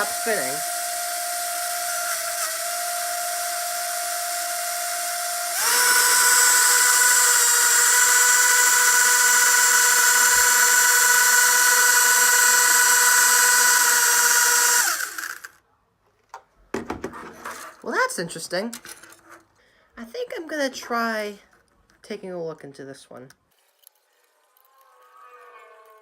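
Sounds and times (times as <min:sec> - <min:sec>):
toy drone motors whining: 0:00.0 - 0:15.6, 0:23.6 - 0:26.0.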